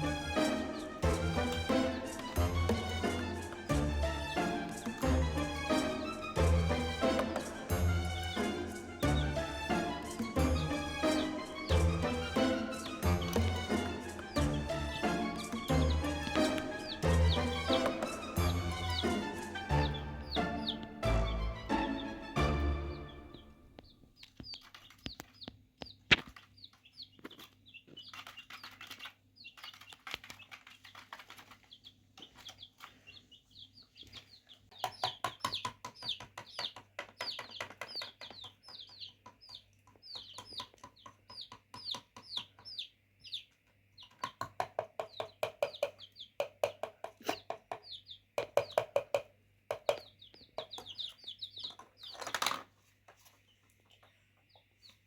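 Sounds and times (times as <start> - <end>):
chickens peeping: 0.0 - 55.0
pecking clicks and taps: 12.7 - 19.6, 23.8 - 33.0, 34.7 - 42.9, 43.5 - 52.6.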